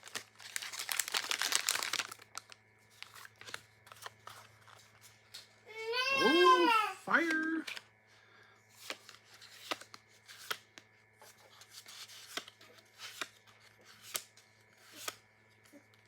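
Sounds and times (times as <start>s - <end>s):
trading cards swishing and clicking: 11.6s - 15.2s.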